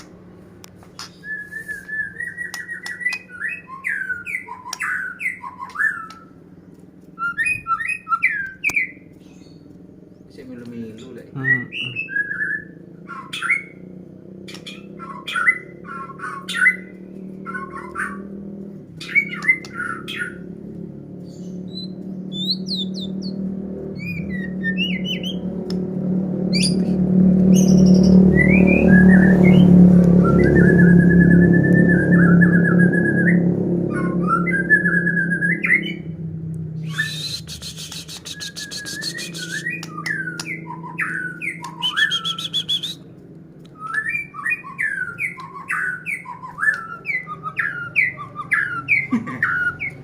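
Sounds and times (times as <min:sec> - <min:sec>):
low steady hum: 0:00.0 - 0:13.2, 0:18.2 - 0:45.5
songbird chirping and whistling: 0:00.8 - 0:10.4, 0:11.0 - 0:13.9, 0:14.5 - 0:20.6, 0:21.2 - 0:36.2, 0:36.8 - 0:50.0.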